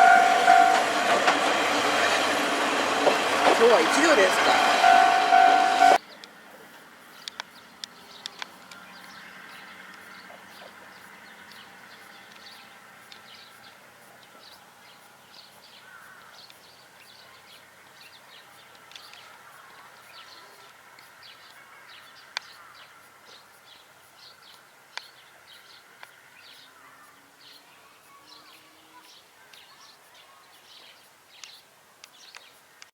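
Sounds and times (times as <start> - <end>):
diesel railcar engine hum: 0.0 - 24.4
small birds chirping: 6.0 - 32.9.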